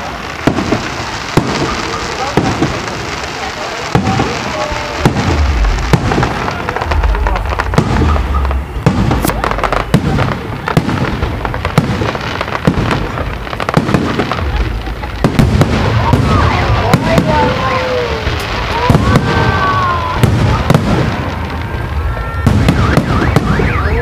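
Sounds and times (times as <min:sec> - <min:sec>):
fireworks bursting: 0:00.0 - 0:24.0
low rumble: 0:05.1 - 0:10.0.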